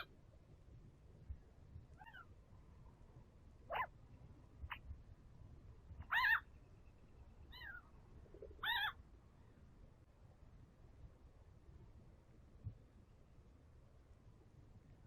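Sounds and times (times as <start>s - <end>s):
animal mewing cries: 6.1s - 6.5s, 8.6s - 9.0s.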